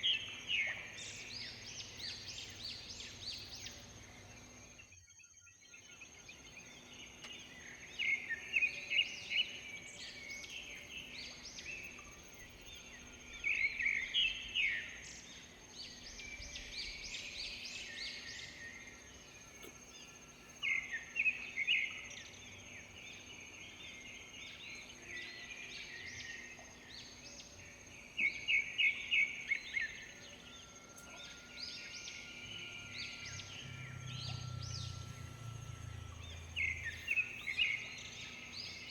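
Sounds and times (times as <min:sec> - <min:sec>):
high-pitched whine: 0:28.8 - 0:38.9.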